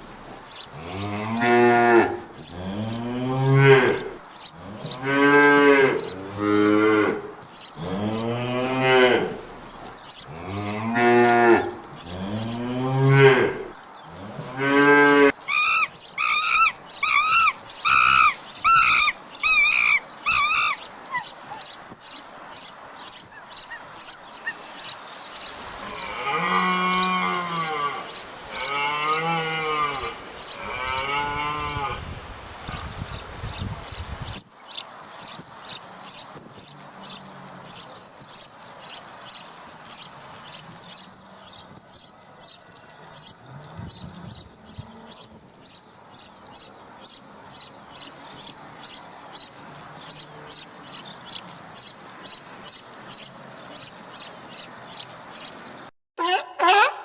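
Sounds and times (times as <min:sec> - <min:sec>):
cow mooing: 0:00.8 - 0:04.1, 0:04.8 - 0:07.2, 0:07.8 - 0:09.4, 0:10.3 - 0:13.7, 0:25.6 - 0:32.1.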